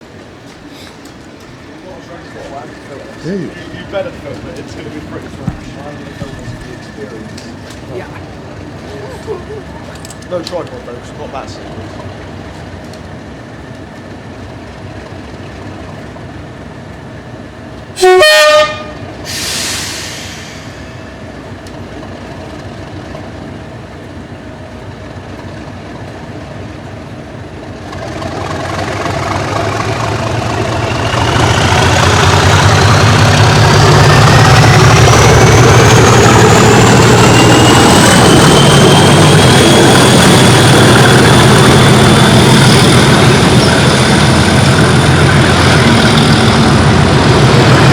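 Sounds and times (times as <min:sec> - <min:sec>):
diesel locomotive engines: 0:00.0 - 0:47.9
locomotive horn blast: 0:18.0 - 0:20.6.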